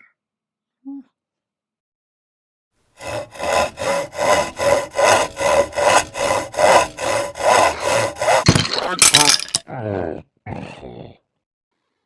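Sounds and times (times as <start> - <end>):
hand saw cutting wood: 3.0 - 9.6.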